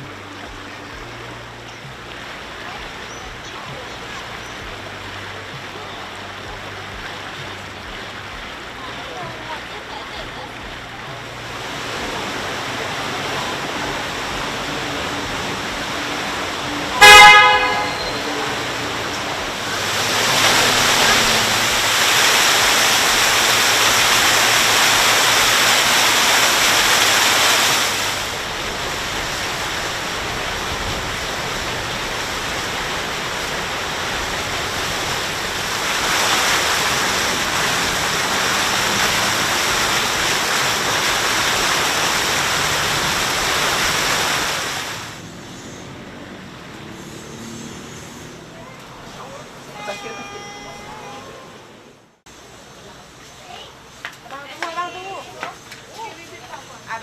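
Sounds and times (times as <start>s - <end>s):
rushing water and wind: 0.0s - 52.4s
horn toot: 14.4s - 23.0s, 49.6s - 51.8s.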